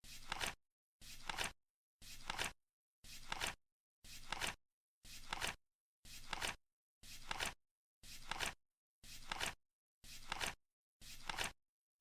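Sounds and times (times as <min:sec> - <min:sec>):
flip clock cards flipping: 0:01.2 - 0:01.5, 0:02.2 - 0:02.6, 0:04.2 - 0:04.6, 0:05.2 - 0:05.6, 0:06.2 - 0:06.6, 0:07.2 - 0:07.6, 0:08.2 - 0:08.6, 0:09.2 - 0:09.6, 0:10.2 - 0:10.6, 0:11.2 - 0:11.6.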